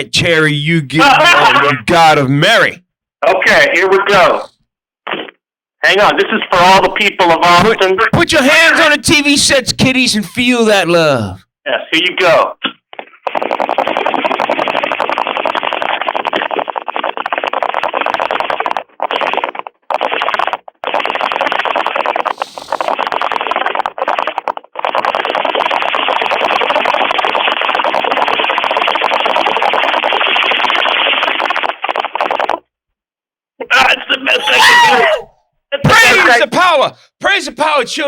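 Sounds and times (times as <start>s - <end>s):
bubbling bong over phone line: 0.0s - 2.7s, 13.2s - 32.7s.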